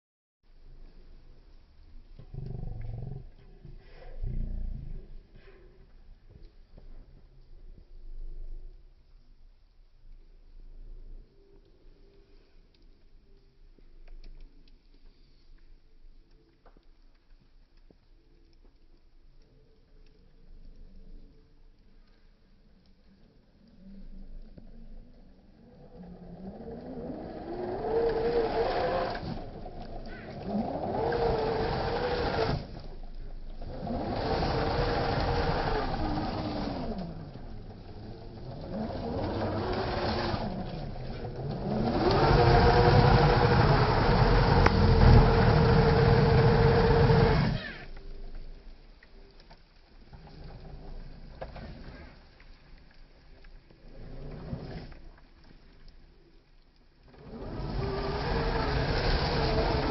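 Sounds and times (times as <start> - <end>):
off-road car engine revving: 25.8 - 32.9, 33.5 - 47.8, 57.3 - 59.9.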